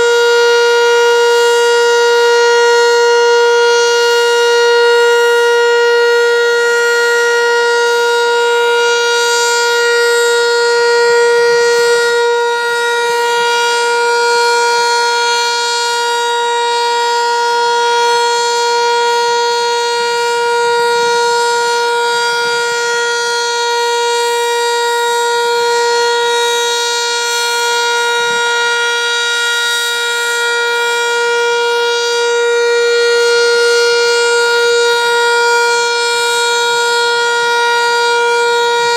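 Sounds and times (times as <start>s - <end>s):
tornado siren steady tone: 0.0s - 38.9s.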